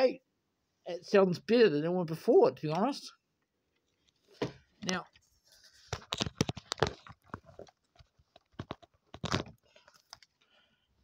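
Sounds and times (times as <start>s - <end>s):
clatter of clicks and knocks: 5.9s - 9.6s.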